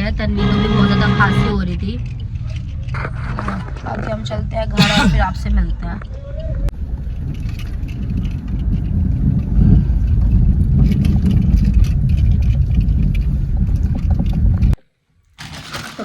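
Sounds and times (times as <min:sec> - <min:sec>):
road noise: 0:00.0 - 0:13.8
vehicle engine rumble: 0:00.0 - 0:14.8.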